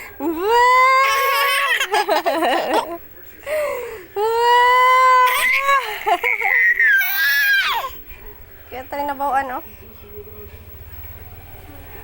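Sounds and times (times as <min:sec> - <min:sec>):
infant crying: 0:00.6 - 0:02.1, 0:04.6 - 0:08.0.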